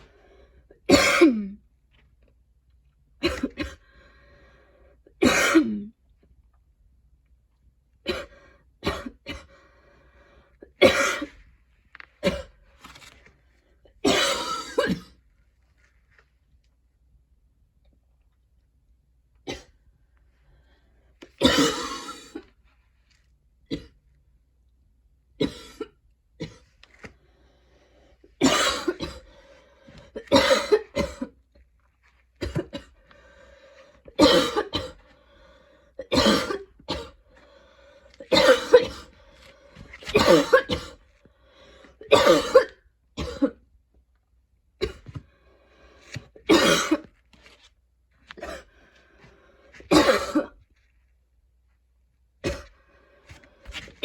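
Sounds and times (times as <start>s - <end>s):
woman coughing harshly: 0.8s - 1.6s, 3.2s - 3.8s, 5.2s - 5.9s, 8.1s - 9.5s, 10.8s - 11.4s, 14.0s - 15.2s, 21.4s - 22.6s, 25.4s - 26.6s, 28.4s - 29.3s, 30.2s - 31.4s, 32.4s - 33.0s, 34.2s - 35.0s, 36.0s - 37.2s, 38.3s - 39.1s, 40.1s - 41.0s, 42.0s - 43.6s, 44.8s - 45.1s, 46.5s - 47.1s, 49.9s - 50.6s.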